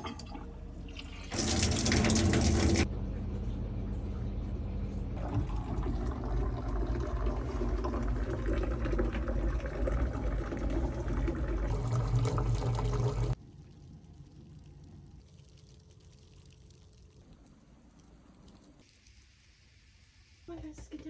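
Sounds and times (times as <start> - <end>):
water running: 0.0 - 2.9, 5.2 - 13.4.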